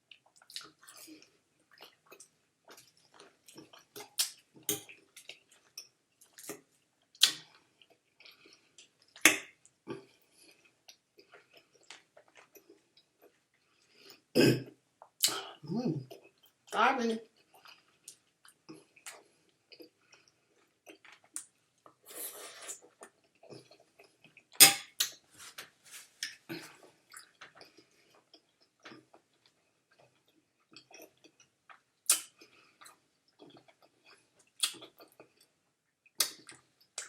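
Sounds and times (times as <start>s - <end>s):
wet chewing and lip smacking: 26.2s - 35.5s, 36.1s - 37.0s.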